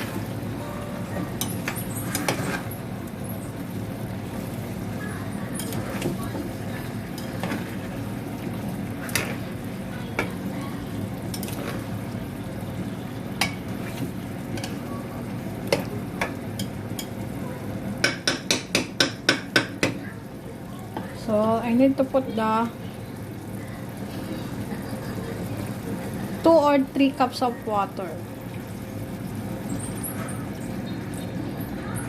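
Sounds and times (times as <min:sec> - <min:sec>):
food sizzling in a pot: 0:00.0 - 0:32.0.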